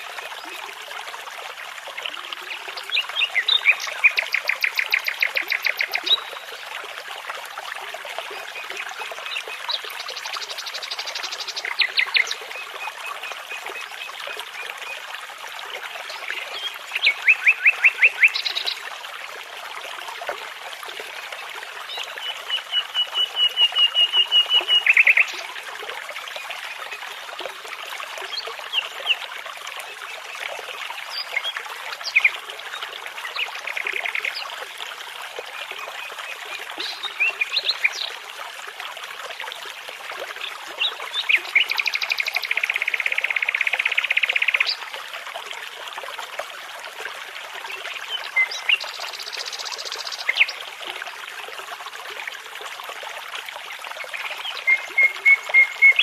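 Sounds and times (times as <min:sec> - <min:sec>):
babbling brook: 0:00.0 - 0:56.0
nightingale song: 0:54.4 - 0:56.0.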